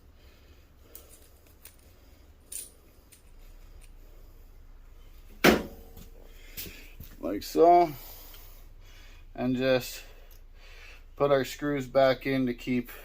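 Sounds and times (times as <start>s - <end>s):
metal screws clicking: 2.5s - 4.0s.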